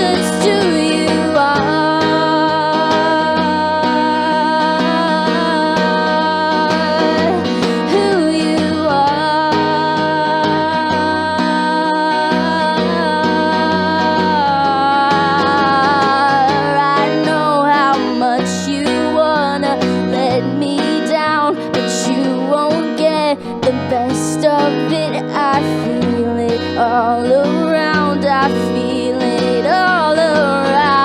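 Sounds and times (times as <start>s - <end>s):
acoustic guitar: 0.0s - 31.0s
woman singing long notes: 0.0s - 31.0s.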